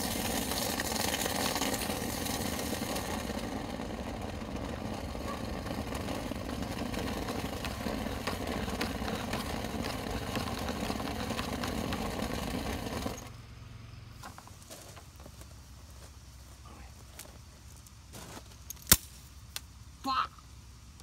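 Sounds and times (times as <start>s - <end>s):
motor running steadily: 0.0s - 13.6s.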